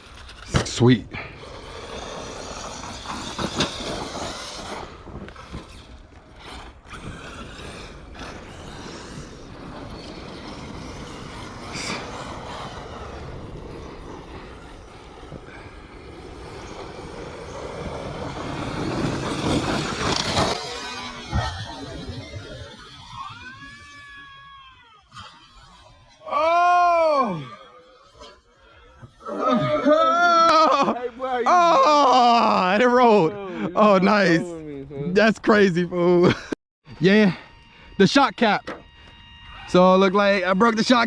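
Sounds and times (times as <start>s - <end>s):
tyres on gravel: 0.0s - 23.5s
electric motors whining: 1.1s - 30.9s, 36.9s - 41.0s.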